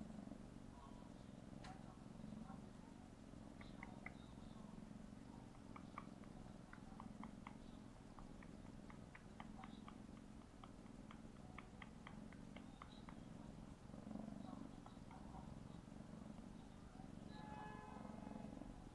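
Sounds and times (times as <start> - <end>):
kitten purring: 0.0 - 17.4, 18.0 - 18.9
kitten mouth clicking: 3.5 - 4.3, 5.4 - 13.4, 14.6 - 15.5.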